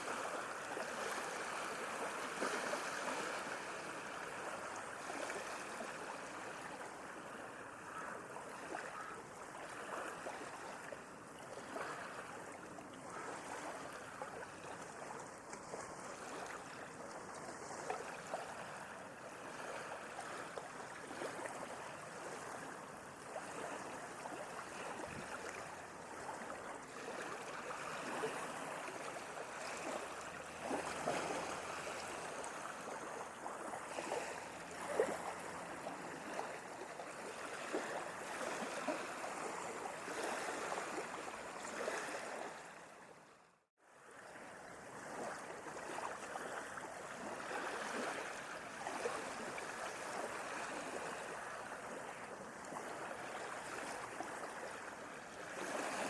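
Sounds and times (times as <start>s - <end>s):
sea water lapping at shore: 0.0s - 56.0s.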